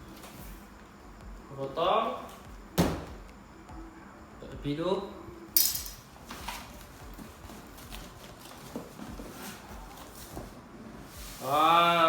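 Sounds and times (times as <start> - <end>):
cardboard rustling and knocks: 6.3 - 10.6.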